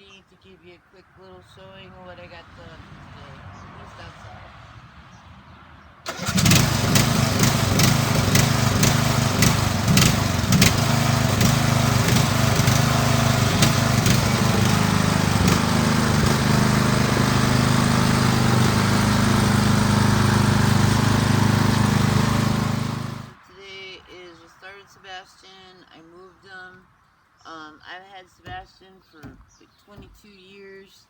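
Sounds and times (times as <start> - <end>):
lawn mower engine running: 6.1 - 23.4.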